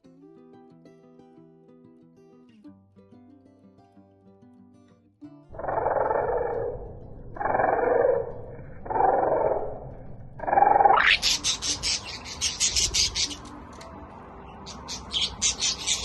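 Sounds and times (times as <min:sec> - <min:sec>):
high budgie chirps: 0:05.5 - 0:09.8, 0:10.4 - 0:13.6, 0:14.4 - 0:16.0
slowed budgerigar chatter: 0:05.5 - 0:09.8, 0:10.4 - 0:13.5, 0:14.5 - 0:16.0.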